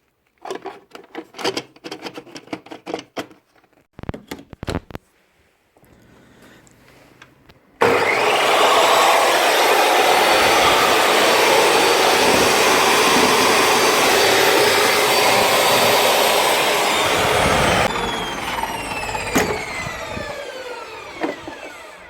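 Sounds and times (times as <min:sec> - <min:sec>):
table saw motor whine: 0:07.8 - 0:22.0.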